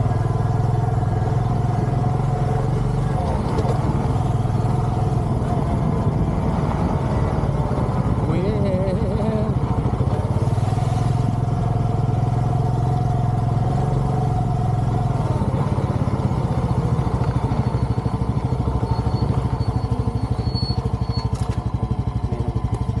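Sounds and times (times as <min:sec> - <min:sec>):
engine running: 0:00.0 - 0:23.0.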